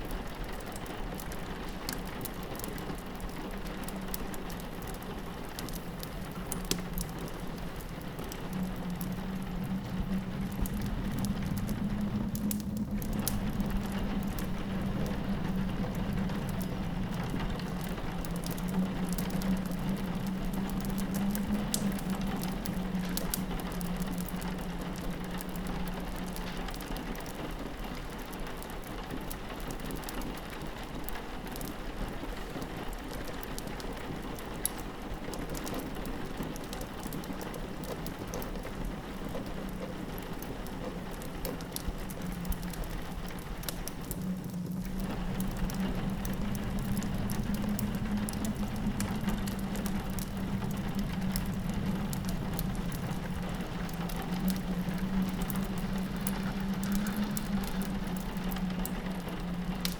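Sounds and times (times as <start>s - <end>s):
rain pattering on a window: 0.0s - 59.9s
wood fire crackling: 0.0s - 59.9s
low steady rumble: 40.8s - 59.9s.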